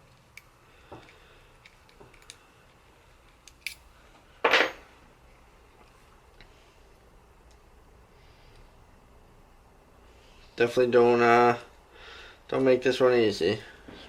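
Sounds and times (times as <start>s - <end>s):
small metal parts clicking: 0.0s - 3.9s.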